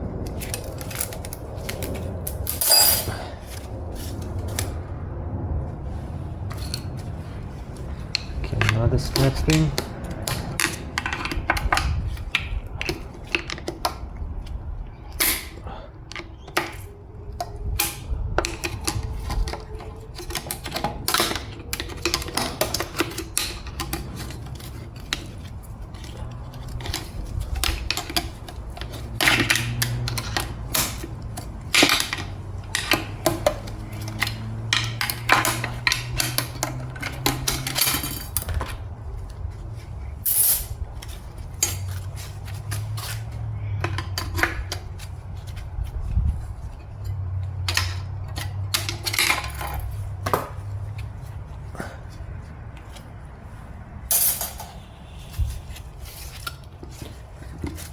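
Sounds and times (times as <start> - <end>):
metal parts clinking and clattering: 0.3 - 3.7, 7.9 - 13.9, 15.1 - 16.9, 17.8 - 38.9, 40.2 - 45.6, 46.6 - 51.0, 54.1 - 57.9.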